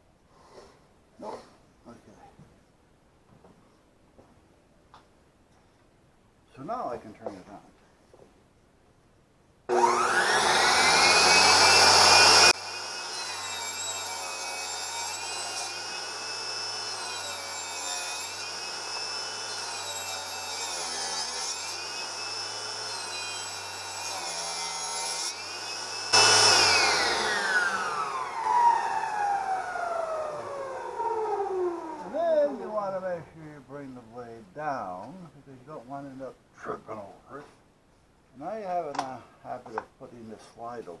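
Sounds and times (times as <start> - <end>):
saw blade cutting: 9.7 - 31.3
table saw motor whining: 9.7 - 32.2.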